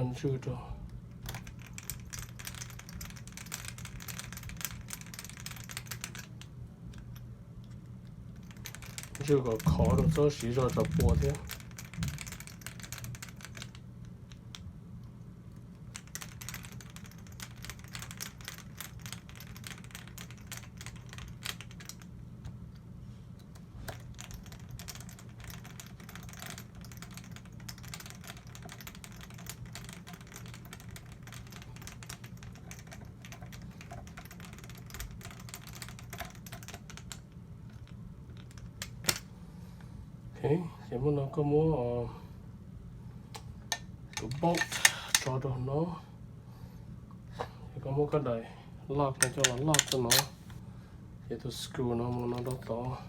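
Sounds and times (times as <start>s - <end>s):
steady low hum: 0.0s - 53.0s
metal parts clicking and tapping: 23.4s - 39.2s, 43.7s - 45.3s, 49.2s - 50.4s.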